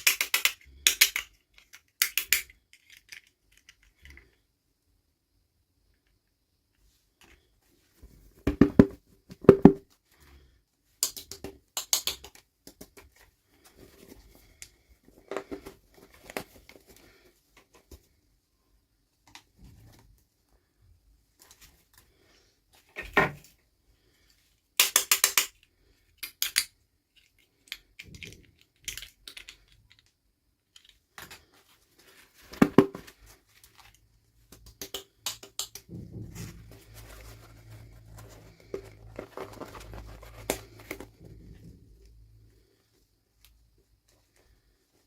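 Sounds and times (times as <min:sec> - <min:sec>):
plastic toy pieces clicking: 0:00.0 - 0:04.3, 0:11.0 - 0:12.9, 0:24.8 - 0:31.0, 0:34.6 - 0:35.8.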